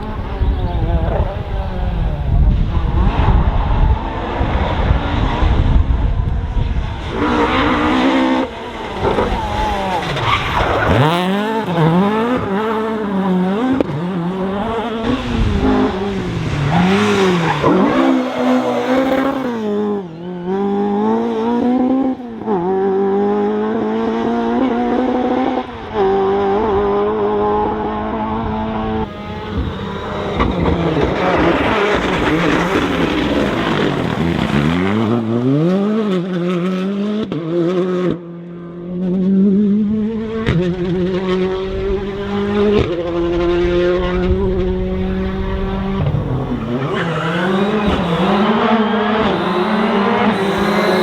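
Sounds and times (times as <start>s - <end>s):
rally car engine revving: 0.0s - 51.0s
tyres skidding: 7.1s - 20.0s, 29.1s - 35.4s, 45.1s - 51.0s.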